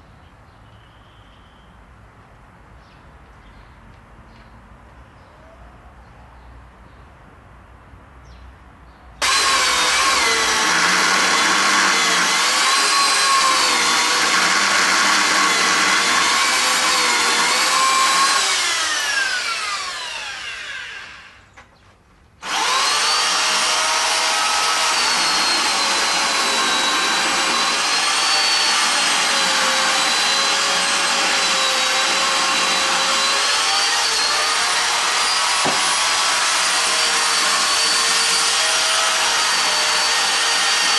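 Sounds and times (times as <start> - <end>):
chainsaw cutting wood: 9.2 - 21.4, 22.4 - 40.9.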